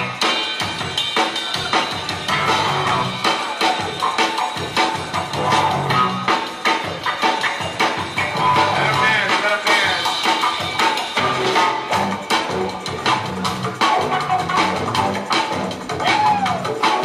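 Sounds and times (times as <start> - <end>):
breakbeat dance music: 0.0 - 17.0.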